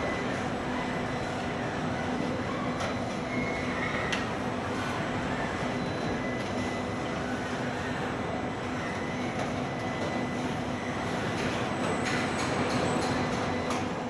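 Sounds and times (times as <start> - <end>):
factory machinery hum and rumble: 0.0 - 14.0.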